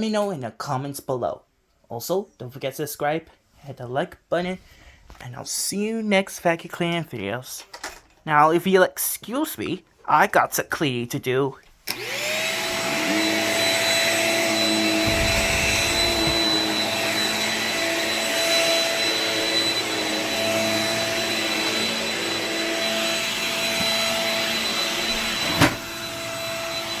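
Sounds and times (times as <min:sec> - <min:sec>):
vacuum cleaner motor whine: 0:11.9 - 0:27.0
low rumble: 0:15.0 - 0:16.6.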